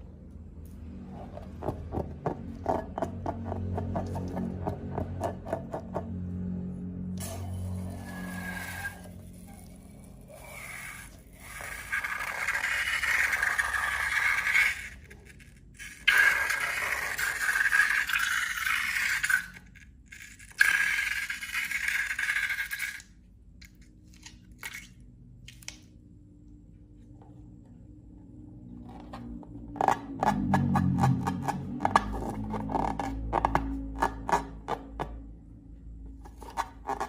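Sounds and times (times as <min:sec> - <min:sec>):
slime being scraped: 0:08.0 - 0:23.1, 0:36.2 - 0:37.0.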